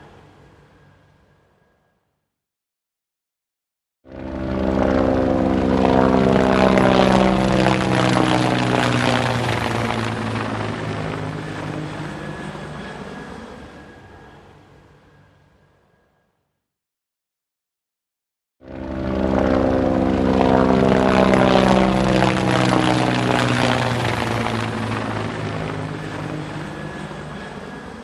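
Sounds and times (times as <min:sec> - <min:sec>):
helicopter flying over: 0:04.1 - 0:14.0, 0:18.6 - 0:28.0.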